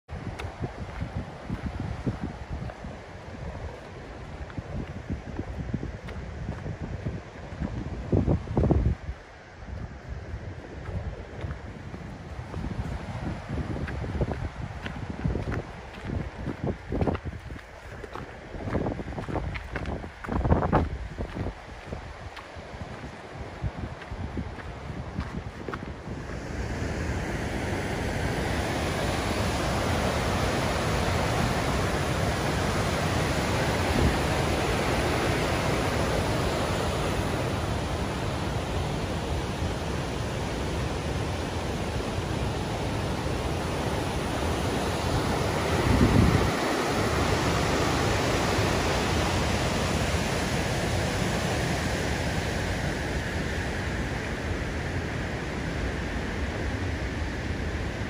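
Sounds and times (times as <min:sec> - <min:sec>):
wind thump on microphone: 0:10.8 - 0:21.6
fast-flowing river rushing: 0:20.5 - 0:58.0.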